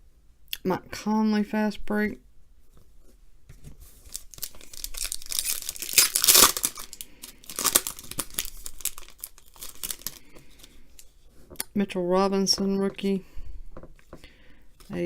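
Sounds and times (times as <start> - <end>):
wrapper tearing and crinkling: 4.0 - 10.6.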